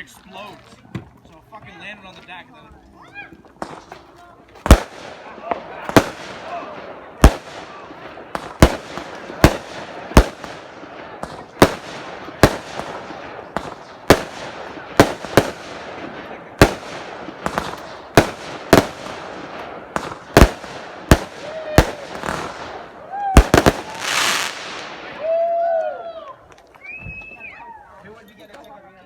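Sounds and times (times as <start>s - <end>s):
fireworks exploding with echo: 3.6s - 25.5s.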